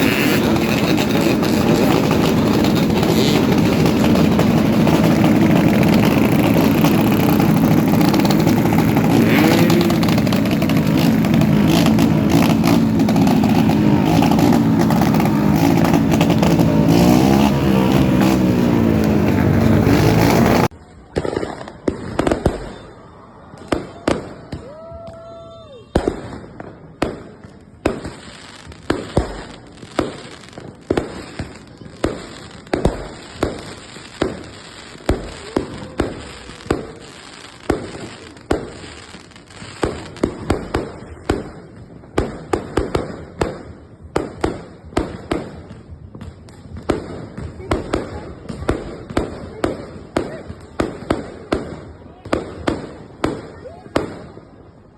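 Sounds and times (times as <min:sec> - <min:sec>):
motorcycle engine revving: 0:00.0 - 0:20.7
firework whistling: 0:00.0 - 0:41.7
fireworks bangs and crackles: 0:00.0 - 0:54.9.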